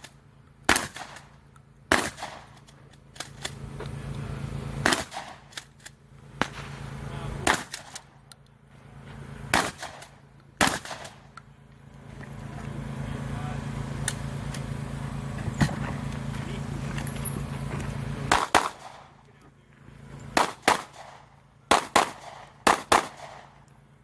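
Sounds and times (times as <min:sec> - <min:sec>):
gunshots: 0:00.0 - 0:03.6, 0:04.8 - 0:05.8, 0:06.4 - 0:08.2, 0:09.5 - 0:11.3, 0:18.3 - 0:19.2, 0:20.3 - 0:23.6.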